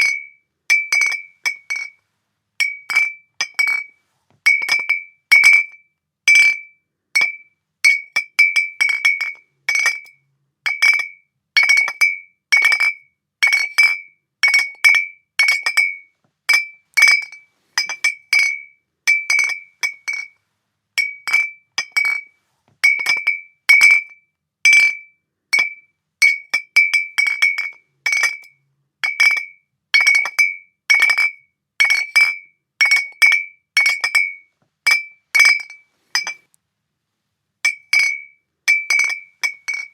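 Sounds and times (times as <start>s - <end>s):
glass bottles clinking: 0.0s - 2.0s, 2.6s - 3.9s, 14.5s - 20.3s, 21.0s - 24.0s, 25.6s - 28.4s, 29.0s - 36.4s, 37.7s - 39.9s.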